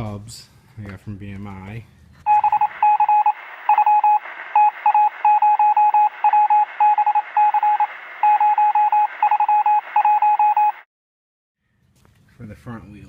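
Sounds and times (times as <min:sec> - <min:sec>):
electronic morse code beeps: 0:02.3 - 0:10.9.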